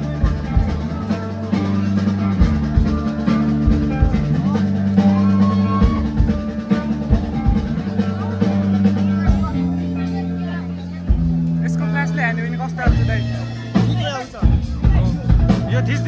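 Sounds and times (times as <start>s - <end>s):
bass drum hits: 0.0s - 12.2s, 12.8s - 16.0s
rock band playing: 0.0s - 16.0s.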